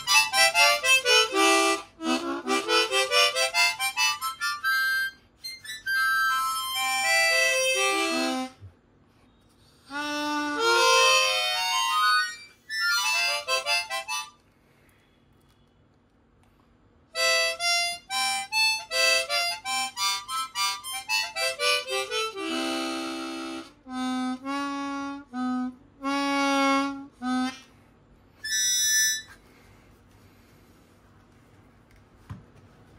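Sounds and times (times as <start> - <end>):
harmonica playing: 0.0 - 8.6, 9.9 - 14.4, 17.2 - 29.7.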